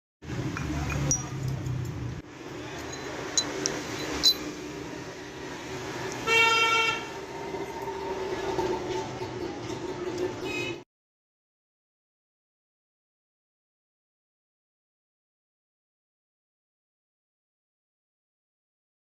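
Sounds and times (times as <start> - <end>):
street background noise: 0.2 - 10.8
vehicle horn honking: 6.2 - 7.2, 10.4 - 10.8.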